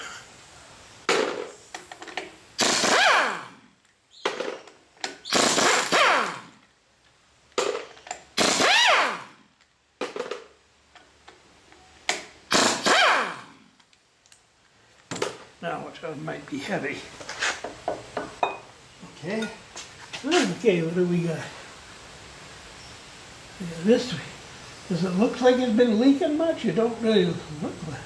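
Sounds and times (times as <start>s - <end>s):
power tool running bolts out: 1.8s - 3.5s, 4.3s - 6.5s, 7.7s - 9.3s, 12.5s - 13.5s.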